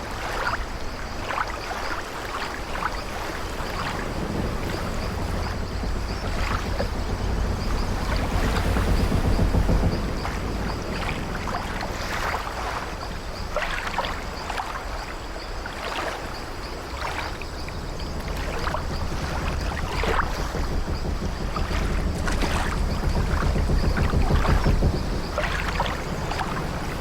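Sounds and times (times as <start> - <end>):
sea waves against hull: 0.0 - 27.0
wooden ship timbers creaking: 2.8 - 14.4, 16.5 - 27.0.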